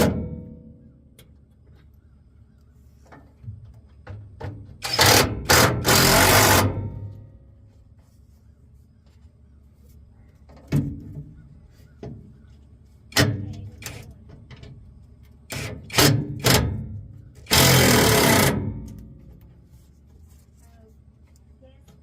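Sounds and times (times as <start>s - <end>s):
loud rasping noise: 4.8s - 7.0s, 17.4s - 19.0s.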